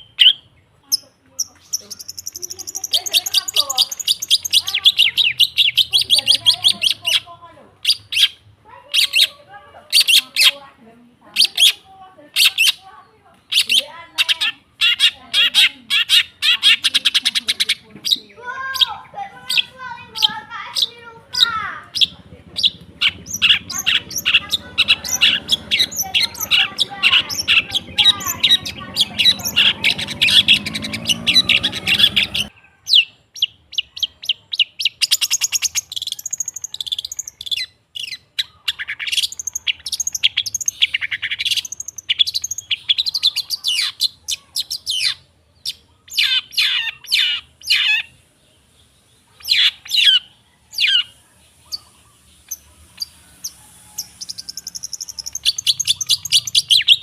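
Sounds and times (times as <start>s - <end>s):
bird chirping: 0.0s - 57.0s
background hum: 17.5s - 32.6s.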